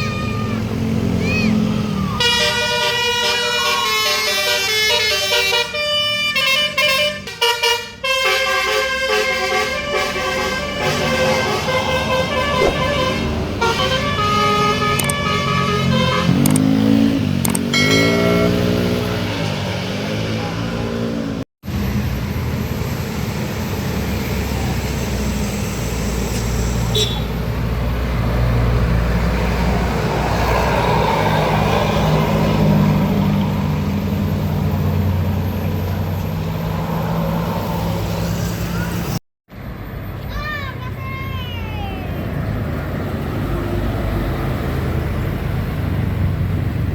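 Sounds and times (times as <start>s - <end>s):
bus engine passing: 0.0s - 7.2s, 9.4s - 46.9s
tyre and road noise: 0.0s - 7.2s, 9.8s - 46.9s
multi-tone bus horn tune: 2.2s - 16.8s, 17.8s - 19.3s, 26.9s - 27.4s.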